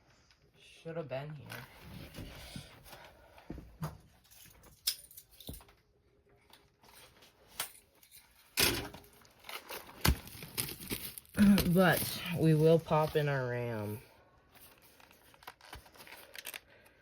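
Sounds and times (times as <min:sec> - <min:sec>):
packaging rustle: 0:09.1 - 0:13.3, 0:14.5 - 0:17.0.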